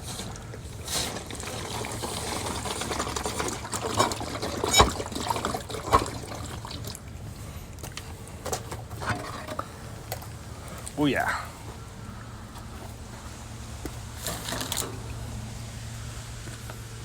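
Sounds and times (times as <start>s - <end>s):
water trickling from a leak: 0.0s - 11.0s
steady low hum: 2.1s - 17.0s.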